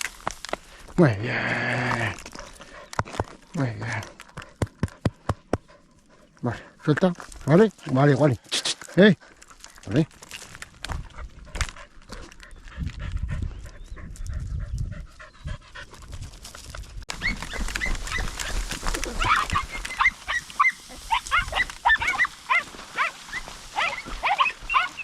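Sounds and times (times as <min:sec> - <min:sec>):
hounds yelping: 0:17.1 - 0:25.0.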